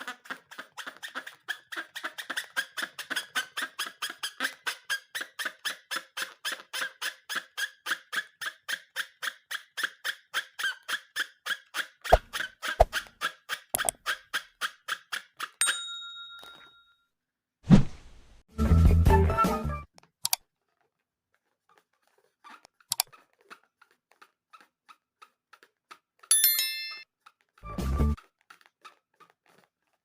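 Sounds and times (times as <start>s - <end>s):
rubber balloon squeaking: 0.0s - 5.4s, 11.5s - 14.4s.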